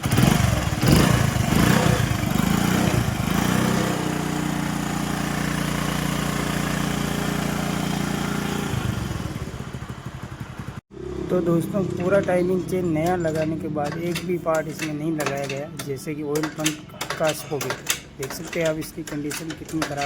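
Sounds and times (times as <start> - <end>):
motorcycle engine running: 0.0 - 15.5.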